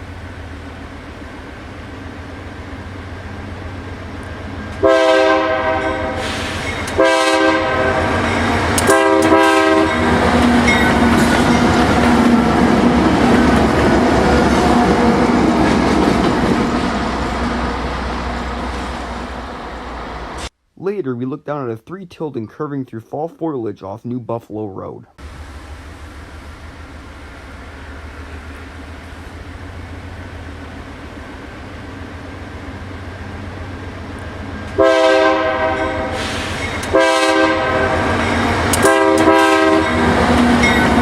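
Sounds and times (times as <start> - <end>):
locomotive engine rumble: 0.0 - 20.5, 25.2 - 41.0
train wheel noise: 0.0 - 20.5, 25.2 - 41.0
locomotive horn blasts: 4.8 - 12.0, 34.8 - 36.2, 36.9 - 40.2.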